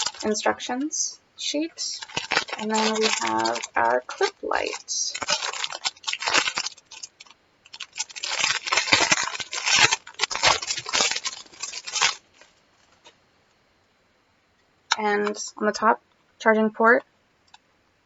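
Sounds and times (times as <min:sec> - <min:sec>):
plastic packaging crinkling: 0:00.0 - 0:13.2.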